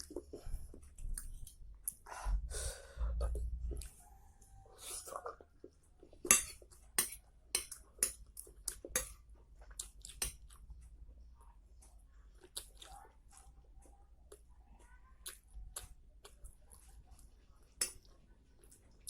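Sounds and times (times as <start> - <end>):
quiet chewing: 0.0 - 2.3, 3.2 - 19.0
cutlery clinking on a dish: 6.2 - 8.2.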